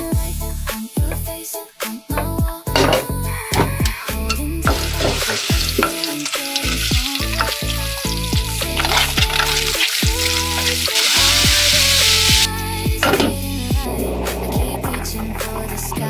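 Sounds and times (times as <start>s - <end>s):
background music with deep bass: 2.1s - 16.0s
food frying and sizzling: 3.8s - 12.5s, 13.2s - 15.0s.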